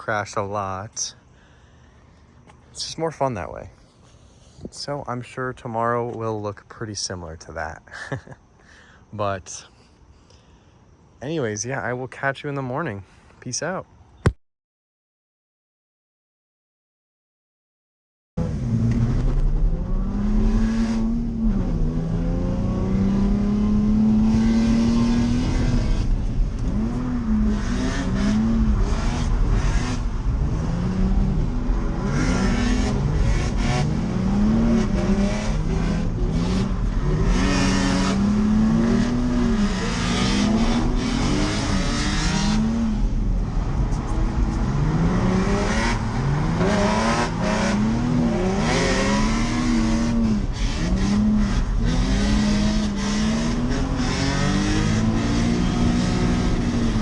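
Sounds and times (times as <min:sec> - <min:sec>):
car engine revving: 0:18.4 - 0:57.0.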